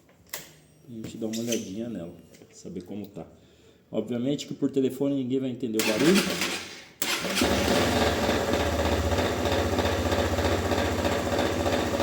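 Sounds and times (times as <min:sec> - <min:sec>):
motorcycle engine running: 0:07.2 - 0:12.0.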